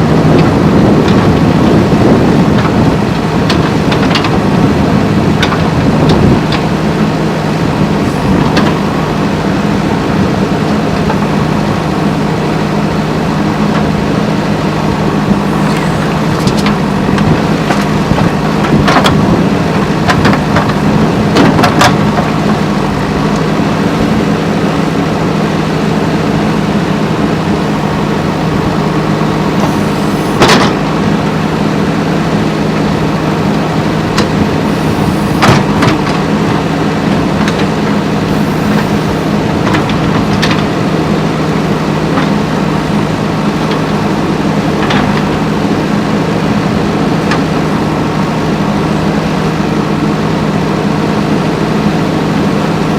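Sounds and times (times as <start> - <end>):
diesel engine running: 0.0 - 52.9.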